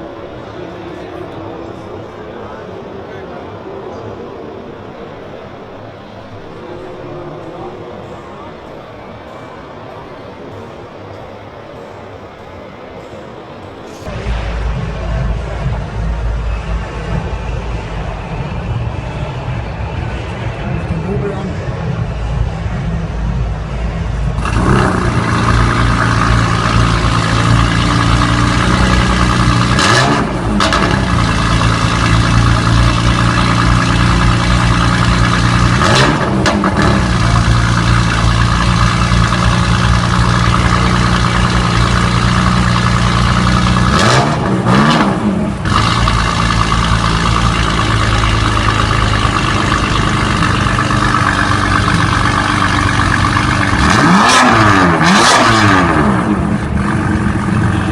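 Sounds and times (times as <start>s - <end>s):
car engine at high revs: 24.3s - 57.9s.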